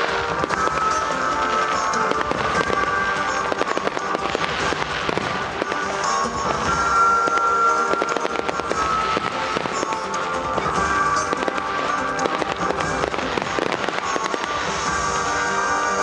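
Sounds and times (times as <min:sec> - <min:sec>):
fireworks crackling and banging: 0:00.0 - 0:16.0
music with long held notes: 0:00.0 - 0:16.0.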